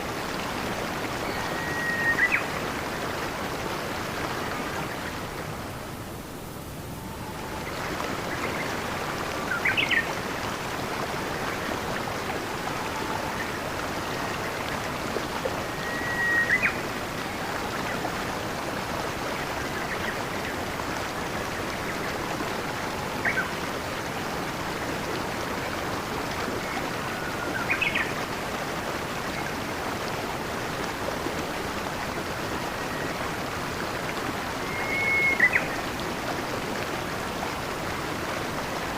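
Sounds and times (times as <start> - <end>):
stream water flowing: 0.0 - 38.9.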